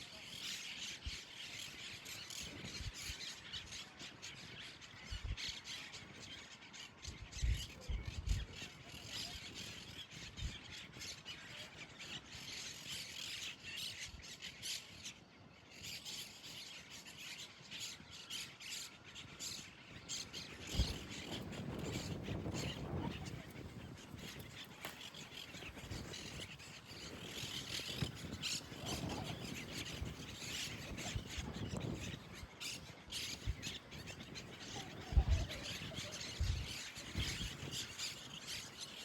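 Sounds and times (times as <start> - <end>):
birds squawking: 19.9 - 39.0.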